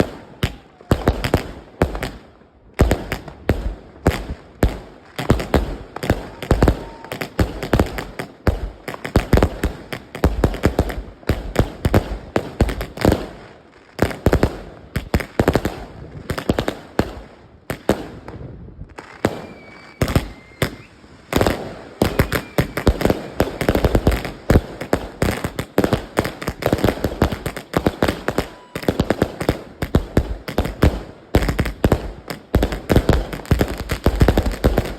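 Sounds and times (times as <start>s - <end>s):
firework cake shots bursting: 19.0s - 34.9s.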